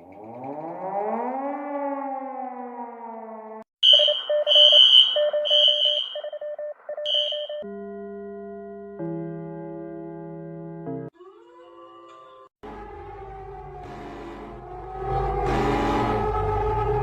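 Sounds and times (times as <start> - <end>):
emergency siren winding: 3.8 - 7.6
high-pitched alarm beeps: 3.8 - 7.6
low warbling alarm tone: 3.8 - 7.6.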